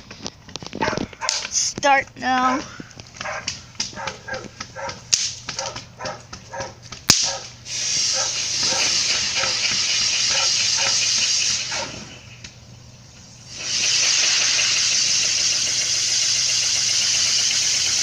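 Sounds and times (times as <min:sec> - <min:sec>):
dog barking and yipping: 0:00.8 - 0:01.6, 0:02.4 - 0:12.1
sharp crack: 0:03.2 - 0:07.6
fountain firework hissing: 0:07.4 - 0:18.0.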